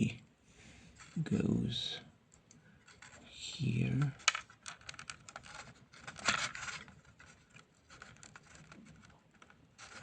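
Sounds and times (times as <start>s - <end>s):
plastic pieces clicking and scratching: 2.3s - 3.2s, 3.9s - 10.0s
plastic scrape: 2.8s - 10.0s.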